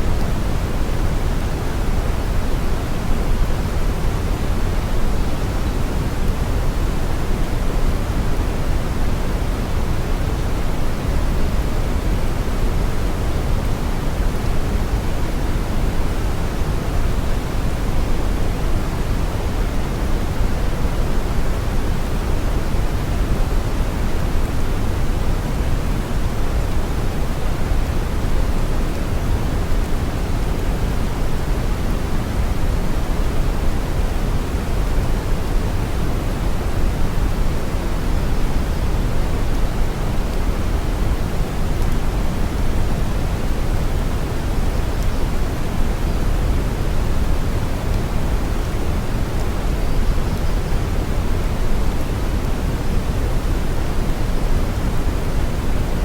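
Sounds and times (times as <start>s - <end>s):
brown noise hiss: 0.0s - 56.0s.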